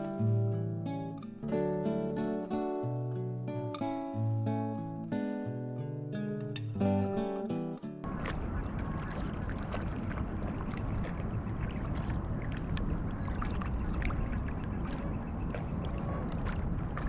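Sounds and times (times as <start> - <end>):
paddle splashing and dripping: 8.0 - 17.0
steady low rumble: 8.0 - 17.0.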